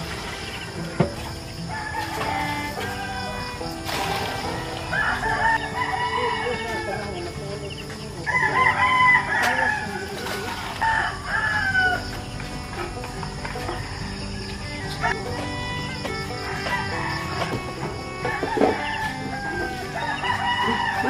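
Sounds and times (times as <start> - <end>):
rooster crowing: 1.5 - 12.3, 13.2 - 21.0.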